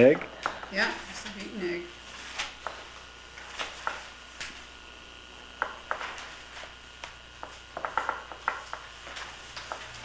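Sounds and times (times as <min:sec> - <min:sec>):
pastry brush tapping: 0:07.4 - 0:09.8.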